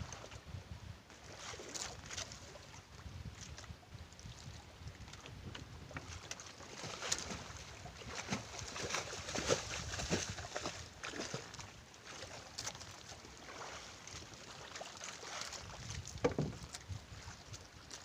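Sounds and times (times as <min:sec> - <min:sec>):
wind buffeting microphone: 0:00.0 - 0:01.0, 0:02.5 - 0:06.2, 0:07.2 - 0:11.0, 0:15.6 - 0:17.6
water lapping against hull: 0:00.0 - 0:18.0.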